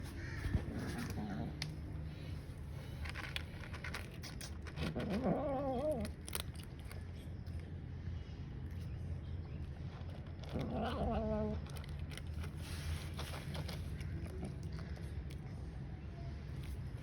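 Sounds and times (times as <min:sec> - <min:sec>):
cat chewing: 0:02.8 - 0:07.9.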